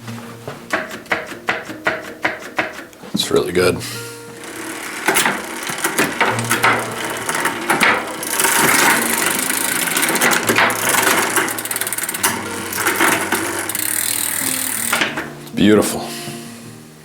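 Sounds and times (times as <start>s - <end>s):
sharp mechanical clicks and knocks: 0.7s - 3.0s, 4.4s - 15.5s.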